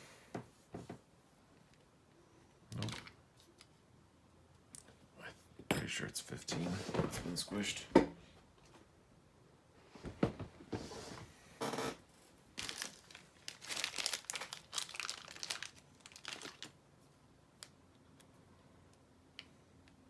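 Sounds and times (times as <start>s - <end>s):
hands crinkling and rustling: 12.3s - 19.0s.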